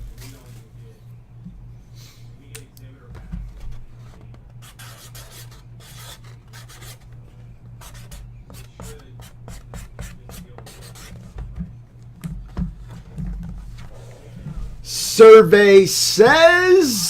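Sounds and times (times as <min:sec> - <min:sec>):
cards and packaging rubbing: 0:03.5 - 0:07.1.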